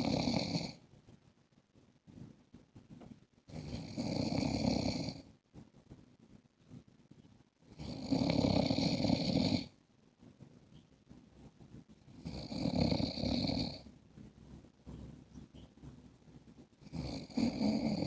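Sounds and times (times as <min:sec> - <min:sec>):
man snoring: 0:00.0 - 0:00.8, 0:03.5 - 0:05.2, 0:07.8 - 0:09.7, 0:12.2 - 0:13.8, 0:16.9 - 0:18.0.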